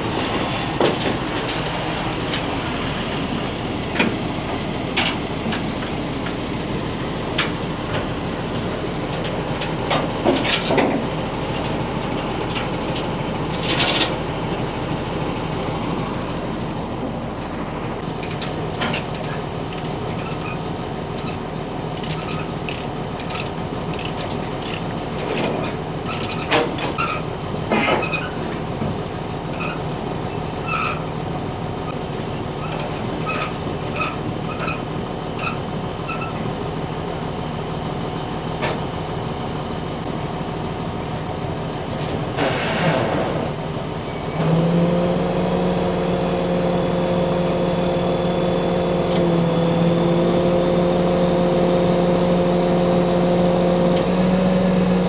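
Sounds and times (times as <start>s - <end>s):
heavy construction machinery running: 0.0s - 55.0s
metallic clanks and knocks: 0.7s - 2.5s, 22.0s - 28.6s.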